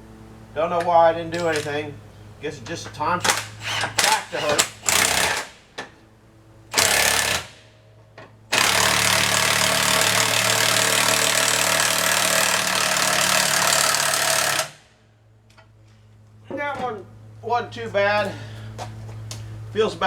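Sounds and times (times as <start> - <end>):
impact wrench hammering: 3.3 - 5.6, 8.5 - 14.8.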